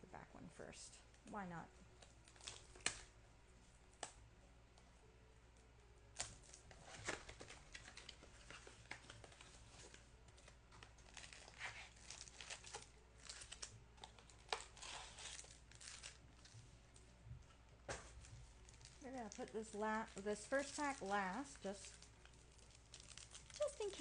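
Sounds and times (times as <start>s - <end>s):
wrapping crinkling and tearing: 1.9s - 3.2s, 6.1s - 17.1s, 18.0s - 24.0s.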